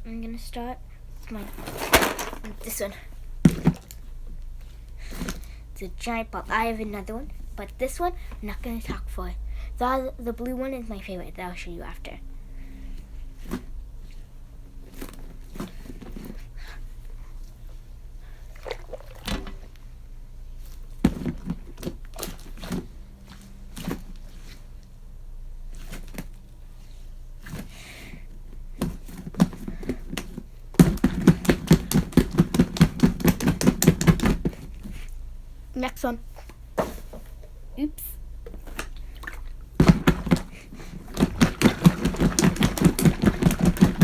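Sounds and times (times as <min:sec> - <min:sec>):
squishy ball squishing: 0:14.7 - 0:27.8, 0:28.6 - 0:35.3, 0:38.5 - 0:44.0
rapid loud thumps: 0:30.8 - 0:34.8, 0:39.8 - 0:44.0.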